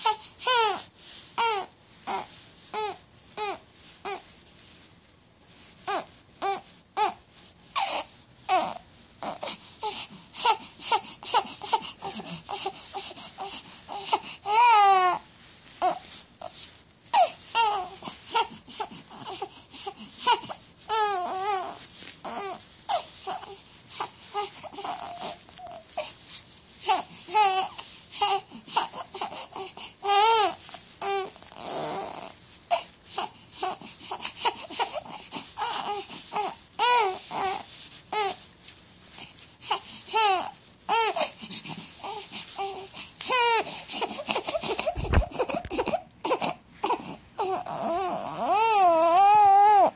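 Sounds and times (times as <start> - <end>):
baby babbling and fussing: 0.0 - 4.3, 5.8 - 15.2, 15.8 - 38.4, 39.1 - 49.9
baby crying high-pitched: 42.0 - 49.9.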